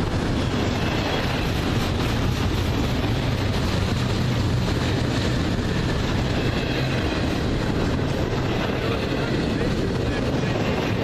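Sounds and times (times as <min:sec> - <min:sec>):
freight train wheels on rails: 0:00.0 - 0:11.0.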